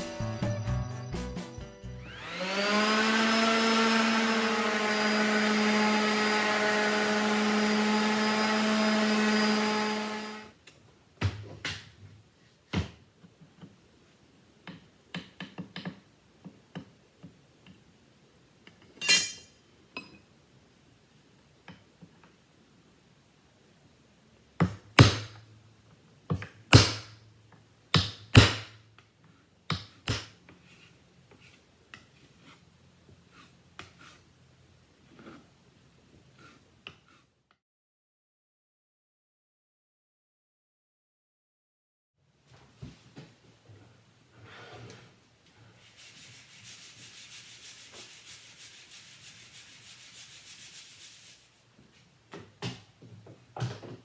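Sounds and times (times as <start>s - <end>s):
power tool motor whining: 2.0s - 10.5s.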